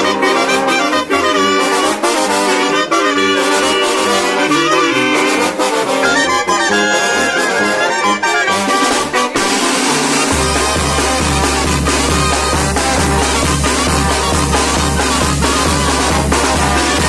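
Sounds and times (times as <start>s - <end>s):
brass band playing: 0.0s - 17.0s
held wavering high note: 3.0s - 8.2s.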